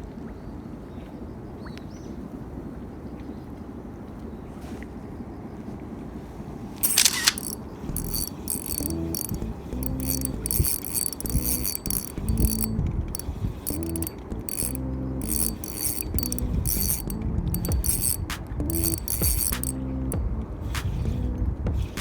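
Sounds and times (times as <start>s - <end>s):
fishing reel gears whirring: 6.8s - 19.8s.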